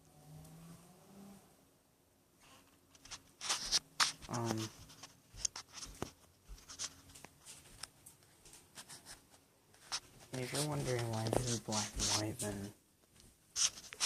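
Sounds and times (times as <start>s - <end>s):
rustling and clicking handling noises: 2.4s - 14.0s.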